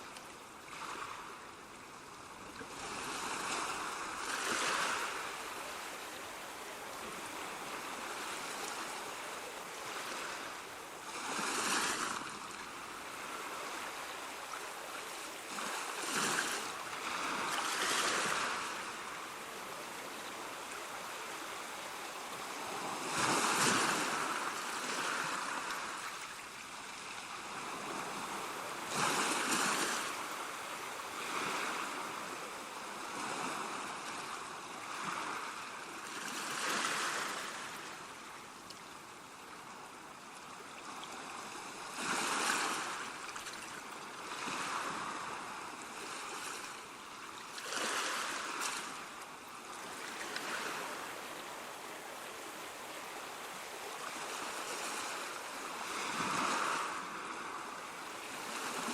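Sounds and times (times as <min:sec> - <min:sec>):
sea waves breaking on shore: 0:00.0 - 0:58.9.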